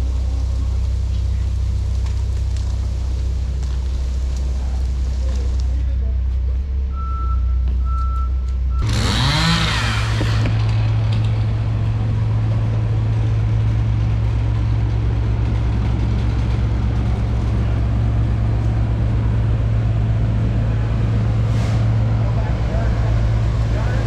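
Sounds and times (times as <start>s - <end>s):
diesel engine revving: 6.8s - 24.0s
reversing beeper: 6.9s - 9.4s.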